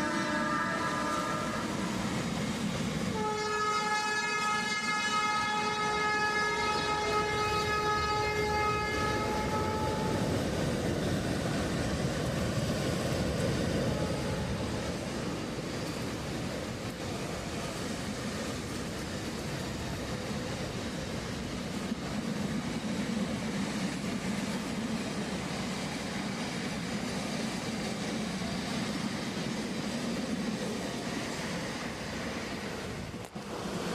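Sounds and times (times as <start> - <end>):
locomotive horn blast: 0.0 - 1.8, 3.1 - 10.2
freight train running past: 0.0 - 33.9.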